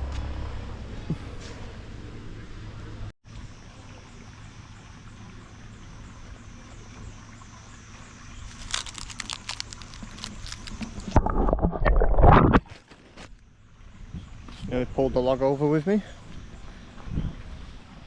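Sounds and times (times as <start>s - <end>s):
footsteps on dry trail: 8.5s - 11.2s.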